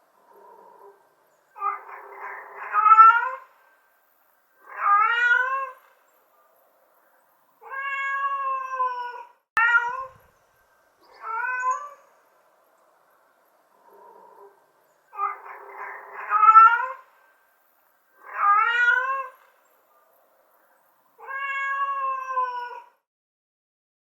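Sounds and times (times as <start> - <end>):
cat meowing: 1.6 - 3.5, 4.6 - 5.9, 7.6 - 10.2, 11.2 - 12.1, 15.2 - 17.1, 18.2 - 19.5, 21.2 - 23.0.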